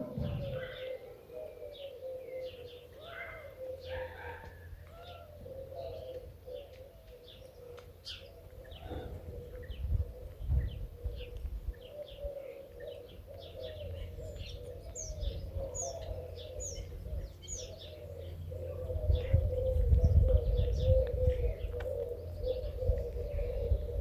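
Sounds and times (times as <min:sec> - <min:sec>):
low rumble: 0:00.0 - 0:00.9
small birds chirping: 0:00.0 - 0:04.1, 0:05.0 - 0:24.0
dove cooing: 0:00.0 - 0:24.0.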